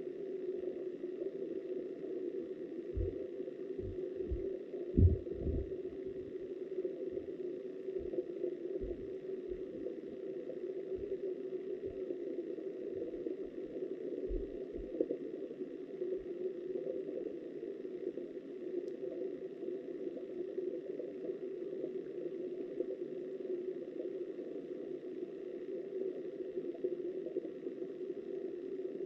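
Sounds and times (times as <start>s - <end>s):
muffled river water underwater: 0.0s - 29.0s
soft low thuds: 2.9s - 3.2s, 3.8s - 6.3s, 8.0s - 9.8s.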